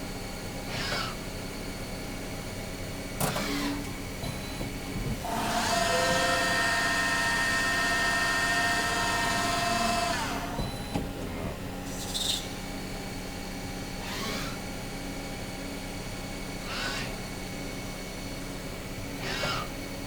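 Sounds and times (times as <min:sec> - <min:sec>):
lathe spindle whine: 0:05.2 - 0:10.6.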